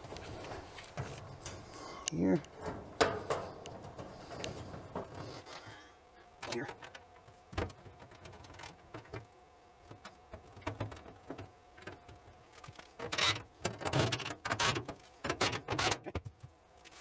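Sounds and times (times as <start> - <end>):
scraping and rattling: 0.0 - 5.7
clicks and knocks of parts: 0.1 - 5.7.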